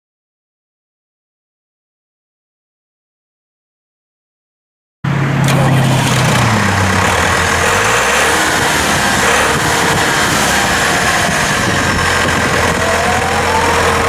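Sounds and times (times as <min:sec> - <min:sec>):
tractor diesel engine running: 0:05.1 - 0:14.0.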